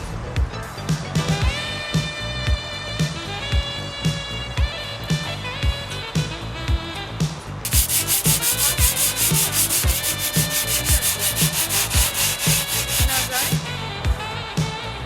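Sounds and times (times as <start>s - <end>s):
background music with steady beat: 0.0s - 14.8s
sanding concrete by hand: 7.7s - 13.6s.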